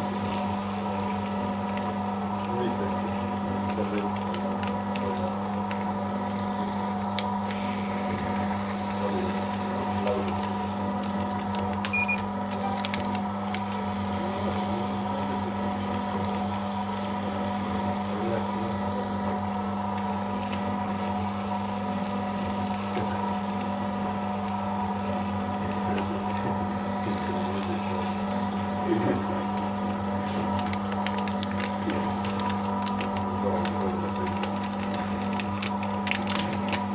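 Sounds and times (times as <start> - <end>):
paper shredder motor humming: 0.0 - 36.9
paper crackle: 7.2 - 16.4, 25.1 - 36.9.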